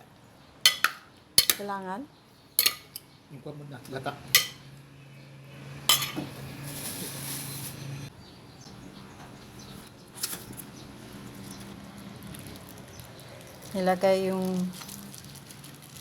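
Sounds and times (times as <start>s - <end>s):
utensils clinking against a bowl: 0.7s - 1.6s, 2.6s - 3.1s, 4.3s - 4.7s, 5.9s - 6.4s.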